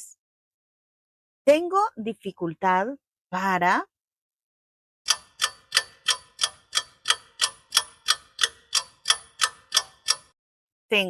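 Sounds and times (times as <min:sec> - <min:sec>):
clock ticking: 0:05.1 - 0:10.4.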